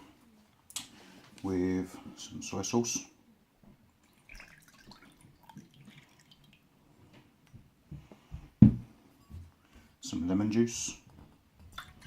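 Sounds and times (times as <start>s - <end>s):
liquid pouring and dripping: 3.9s - 6.7s, 11.6s - 12.0s.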